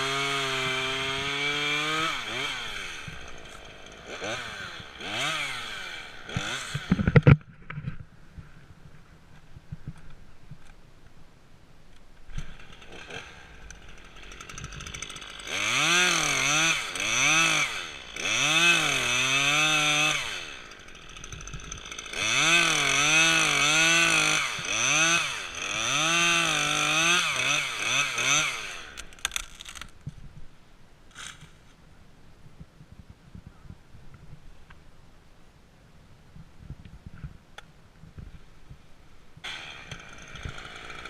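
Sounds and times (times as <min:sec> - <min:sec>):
chainsaw revving and idling: 0:00.0 - 0:07.7, 0:12.3 - 0:29.9, 0:31.1 - 0:31.5, 0:39.4 - 0:41.0.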